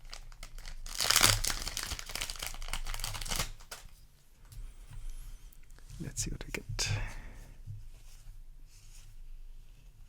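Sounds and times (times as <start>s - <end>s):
crackling wrapper handling: 0.0s - 4.0s
wrapper crinkling and ripping: 0.0s - 4.0s.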